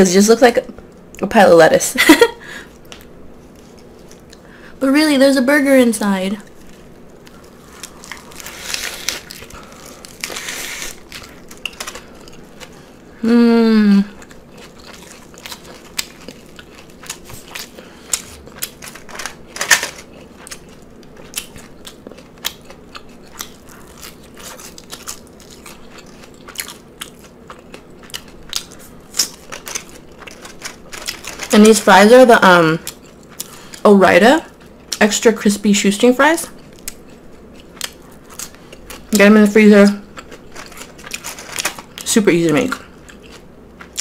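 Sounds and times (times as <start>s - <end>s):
lettuce crackling: 6.4s - 13.1s, 14.2s - 33.8s, 40.1s - 42.1s
wet crunchy chewing: 6.5s - 13.0s, 14.2s - 31.6s, 40.0s - 42.0s, 42.8s - 44.0s
person humming mmm: 13.1s - 14.2s.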